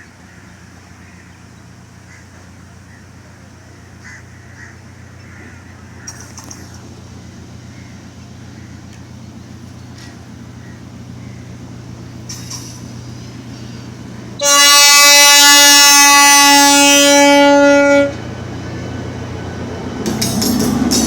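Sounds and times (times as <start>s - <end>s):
train engine drone: 0.0s - 21.0s
train horn blast: 13.6s - 19.0s.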